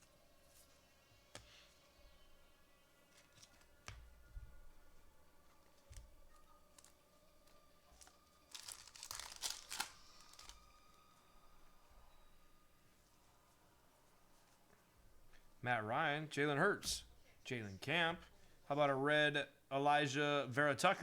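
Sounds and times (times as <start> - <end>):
foil wrapper tearing: 7.9 - 10.8
trading cards clicking: 8.0 - 10.6.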